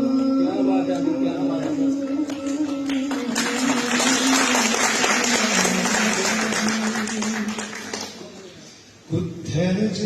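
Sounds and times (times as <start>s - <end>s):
audience applauding: 2.3s - 8.5s.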